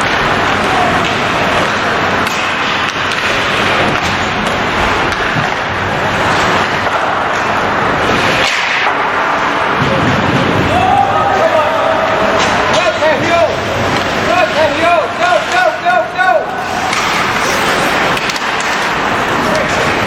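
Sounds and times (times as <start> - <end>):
stick and puck clacks: 0.0 - 10.6, 12.2 - 20.0
rink and crowd noise: 0.0 - 20.0.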